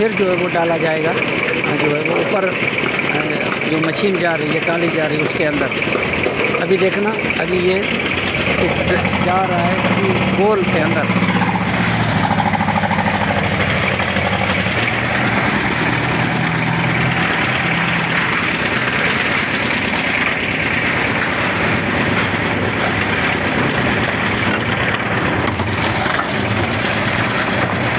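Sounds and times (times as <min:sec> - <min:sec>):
concrete mixer engine humming: 0:00.0 - 0:27.9
aggregate tumbling in a rotating drum: 0:18.2 - 0:27.9.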